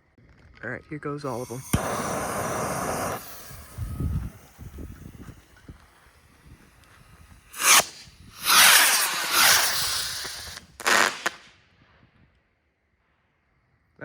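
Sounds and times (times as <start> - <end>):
firework rockets launching with hiss: 1.2 - 11.9.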